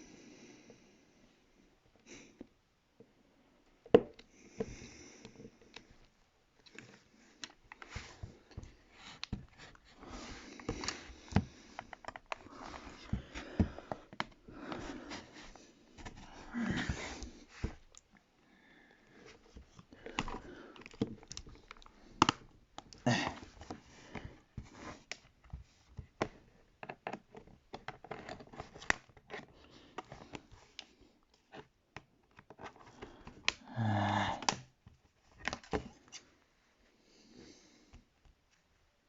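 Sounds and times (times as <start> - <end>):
tools clicking and scraping plastic: 3.9 - 18.2, 19.3 - 33.6.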